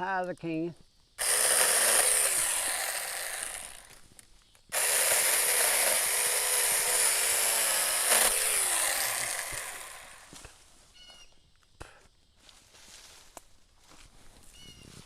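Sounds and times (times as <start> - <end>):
electric chainsaw cutting a limb: 1.2 - 4.0, 4.7 - 10.4.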